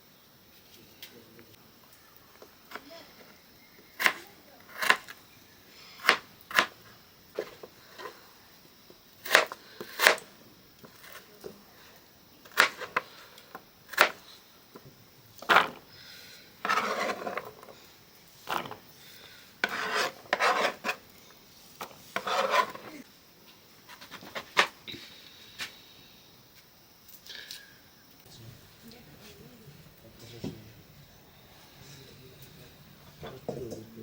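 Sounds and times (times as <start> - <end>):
scraping or rubbing: 16.6 - 17.7, 19.6 - 21.1, 21.8 - 23.0.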